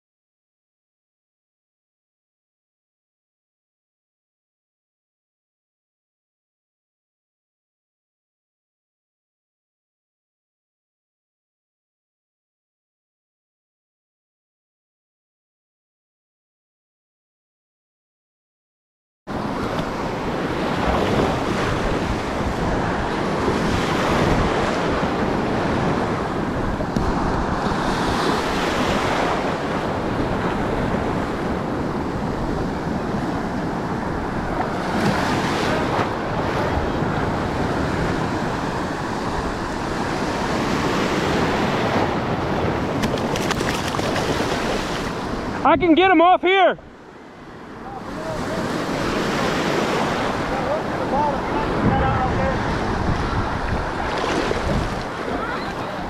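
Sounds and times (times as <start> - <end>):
wind blowing across microphone: 19.3 - 46.0, 47.0 - 56.0
surf washing on beach: 19.3 - 56.0.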